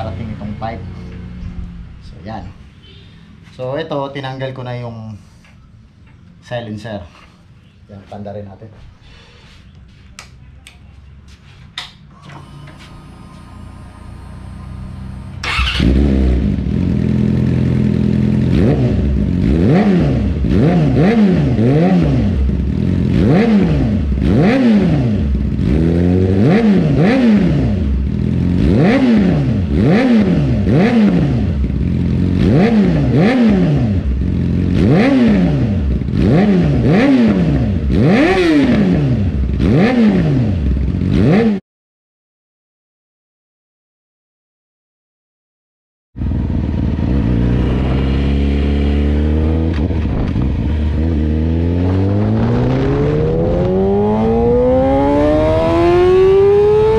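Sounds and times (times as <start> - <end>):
motorcycle engine revving: 0.0 - 3.1, 12.8 - 41.6, 46.2 - 56.9.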